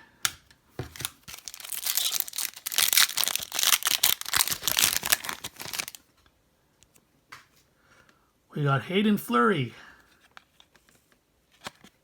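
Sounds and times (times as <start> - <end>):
wrapper being torn and crumpled: 0.9 - 6.0.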